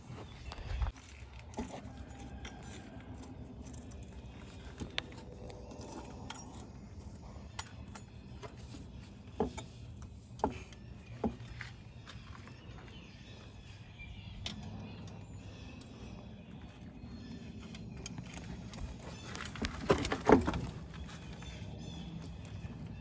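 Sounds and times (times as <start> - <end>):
light metallic clinks: 1.6 - 8.6.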